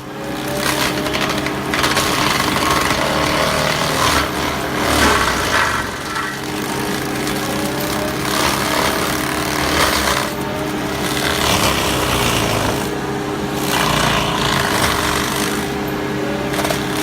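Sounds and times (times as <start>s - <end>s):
excavator engine drone: 0.0s - 17.0s
mulcher rough grinding: 0.0s - 17.0s.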